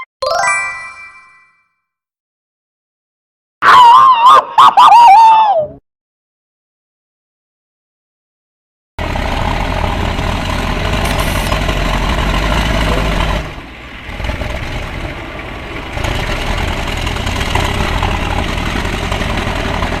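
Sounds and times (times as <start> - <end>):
heavy diesel engine running: 9.0 - 20.0.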